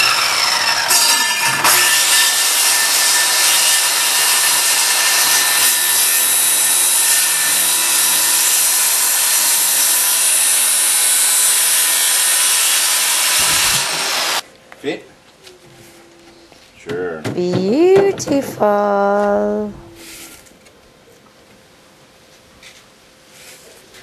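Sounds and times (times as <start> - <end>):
power saw cutting wood: 0.0 - 14.4.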